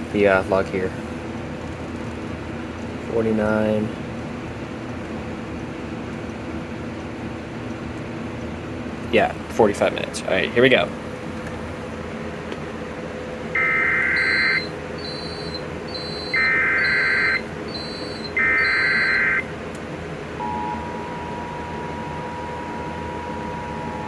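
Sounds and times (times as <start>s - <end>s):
digital data tone bursts: 13.6s - 19.5s
two-tone alert signal: 13.6s - 19.5s, 20.4s - 24.0s.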